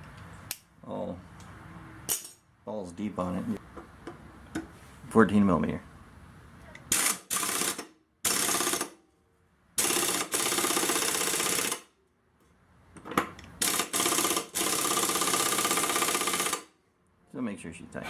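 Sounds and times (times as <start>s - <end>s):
impact wrench hammering: 13.6s - 16.6s.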